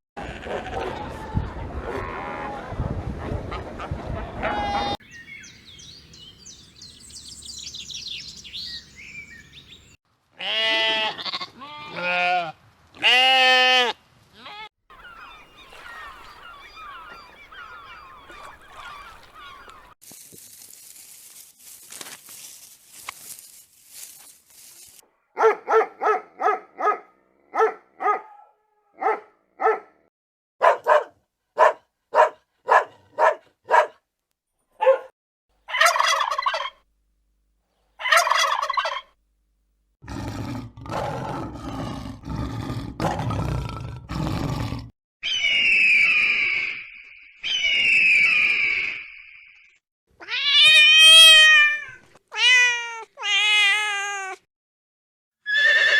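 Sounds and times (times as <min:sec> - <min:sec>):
farmyard sounds: 0:00.2 - 0:02.8, 0:03.4 - 0:25.0, 0:35.7 - 0:36.8, 0:38.0 - 0:39.2
turkeys calling: 0:14.9 - 0:20.0, 0:35.7 - 0:36.8, 0:38.0 - 0:39.2
turkey gobbles: 0:35.7 - 0:36.8, 0:38.0 - 0:39.2.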